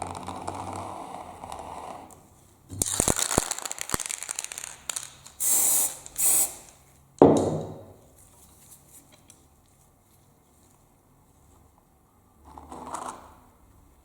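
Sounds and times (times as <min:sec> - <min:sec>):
spray can hissing: 0:05.3 - 0:06.8.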